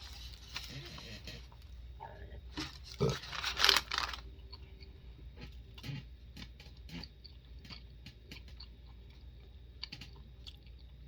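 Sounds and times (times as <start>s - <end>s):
close chewing with mouth clicks: 4.4s - 11.0s.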